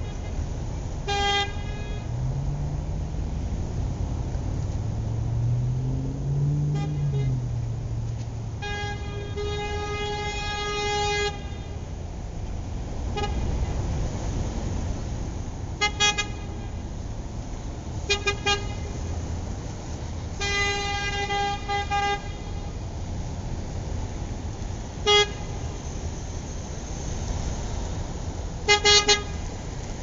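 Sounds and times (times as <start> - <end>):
car horn honking: 0.0 - 2.2, 6.6 - 7.6, 8.5 - 11.8, 15.8 - 16.8, 18.0 - 19.1, 20.4 - 22.7, 25.0 - 25.8, 28.6 - 29.4.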